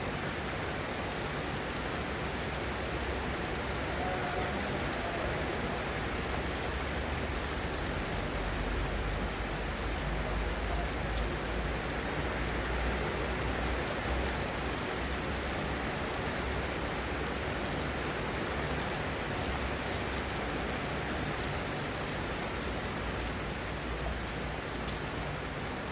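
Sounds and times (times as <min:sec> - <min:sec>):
steady rain hiss: 0:00.0 - 0:25.9
raindrop ticks: 0:07.5 - 0:14.8.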